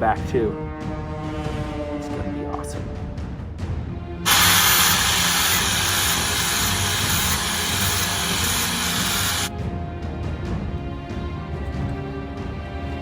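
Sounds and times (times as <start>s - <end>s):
background music: 0.0s - 13.0s
welding arc hissing and crackling: 4.3s - 9.5s.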